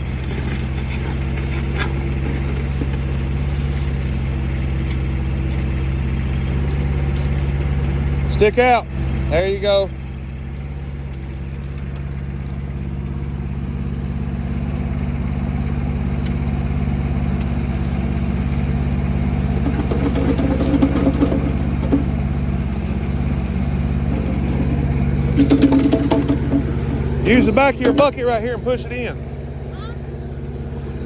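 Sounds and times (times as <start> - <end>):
mini excavator engine running: 0.0 - 31.0
knocks and rattles: 17.2 - 29.2.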